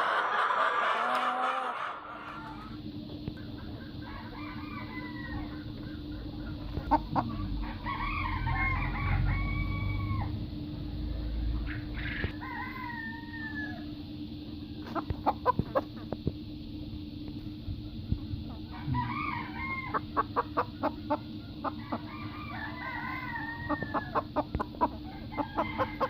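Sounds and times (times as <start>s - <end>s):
rooster crowing: 0.0s - 2.8s, 4.0s - 5.7s, 7.6s - 10.4s, 12.0s - 14.0s, 18.7s - 20.4s, 21.7s - 24.3s, 25.0s - 26.0s
chickens clucking: 0.0s - 10.4s, 11.5s - 13.8s, 14.8s - 16.3s, 17.6s - 26.0s
steady low hum: 0.0s - 26.0s.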